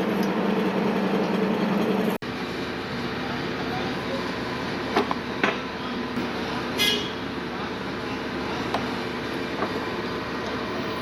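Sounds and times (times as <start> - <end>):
steady mechanical hum: 0.0 - 11.0
short high-pitched toot: 6.8 - 7.2.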